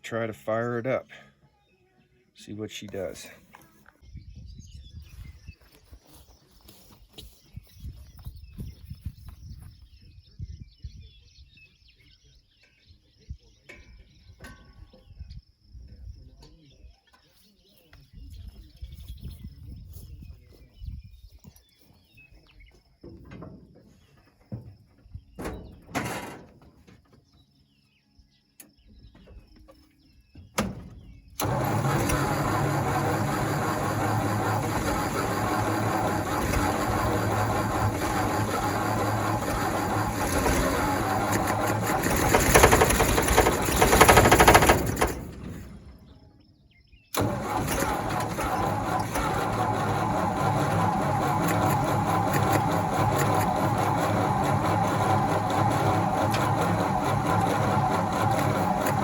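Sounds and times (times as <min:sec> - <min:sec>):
engine running: 0:30.6 - 0:46.3, 0:47.1 - 0:59.0.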